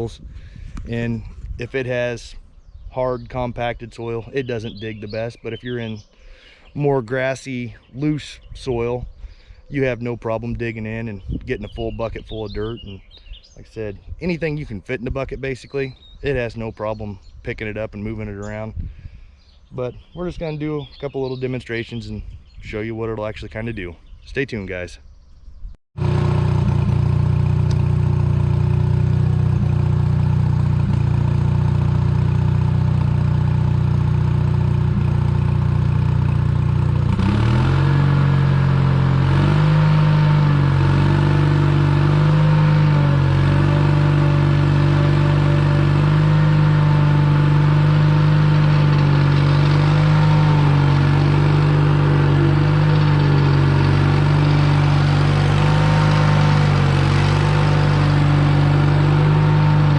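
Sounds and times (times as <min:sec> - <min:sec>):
skid steer engine revving: 0:00.0 - 0:01.9, 0:26.0 - 0:59.9.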